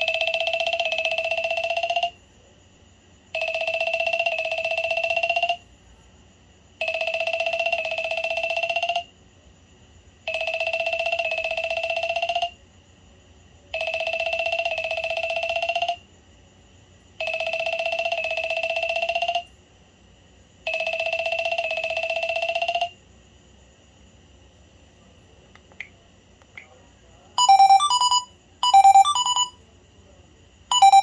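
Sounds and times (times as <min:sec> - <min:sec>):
phone electronic ringtone: 0:00.0 - 0:02.0, 0:03.4 - 0:05.6, 0:13.8 - 0:15.6, 0:17.3 - 0:19.3, 0:20.7 - 0:23.0, 0:27.4 - 0:29.6, 0:30.7 - 0:31.0.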